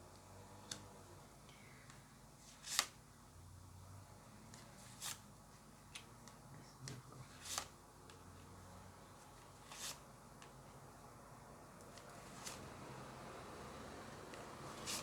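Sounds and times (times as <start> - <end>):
cards swishing and tapping: 14.7 - 15.0.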